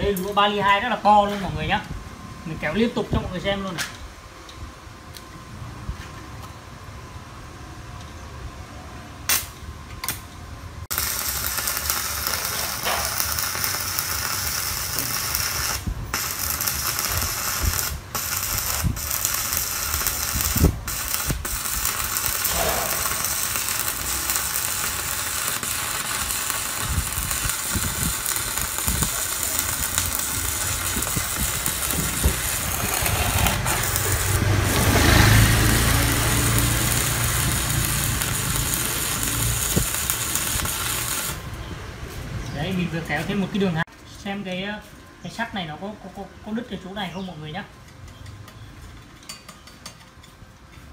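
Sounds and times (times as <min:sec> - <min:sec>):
welding arc sizzling: 0:10.8 - 0:41.6.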